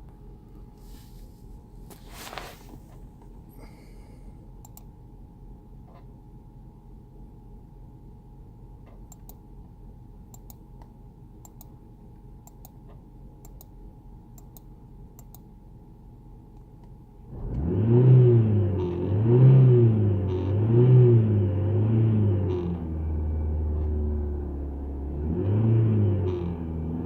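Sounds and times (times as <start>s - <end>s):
car engine revving: 17.3s - 27.0s.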